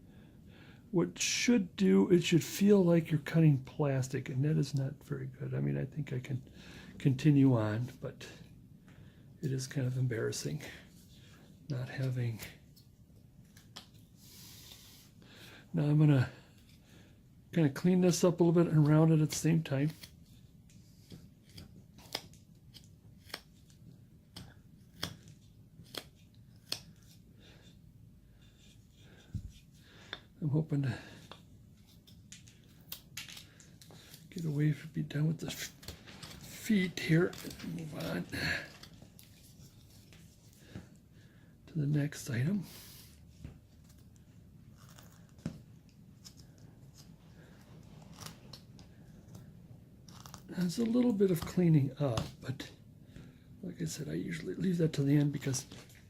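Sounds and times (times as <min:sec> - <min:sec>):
knife carving wood: 0:18.8 - 0:27.7, 0:44.7 - 0:45.5, 0:50.0 - 0:51.5.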